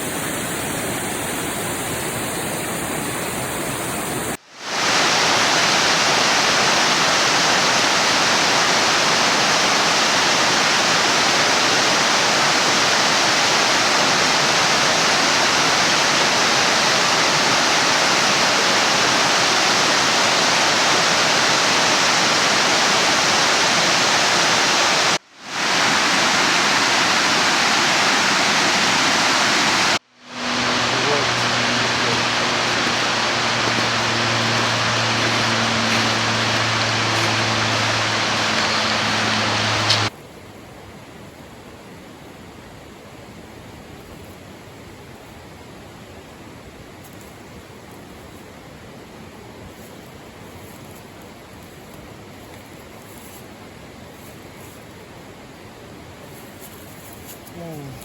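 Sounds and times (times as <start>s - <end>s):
stream rushing over rocks: 0.0s - 40.2s.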